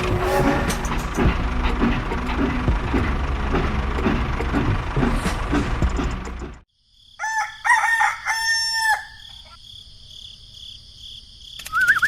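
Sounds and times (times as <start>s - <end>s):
rooster crowing: 7.2s - 9.6s.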